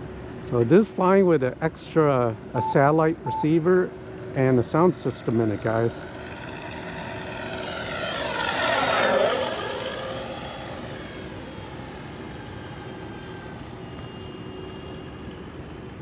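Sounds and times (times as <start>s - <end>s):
simulated engine sound from speaker: 0.4s - 13.7s
model airplane propeller and motor: 4.7s - 15.4s.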